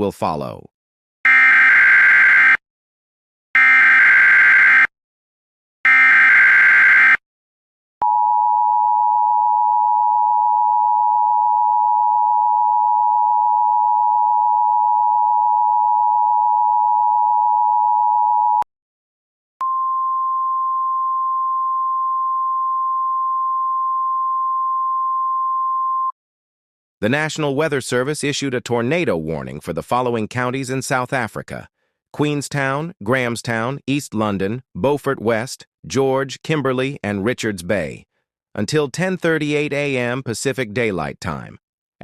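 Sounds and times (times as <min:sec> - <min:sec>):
steady warning tone: 0:01.3 - 0:02.6, 0:03.6 - 0:04.9, 0:05.9 - 0:07.2.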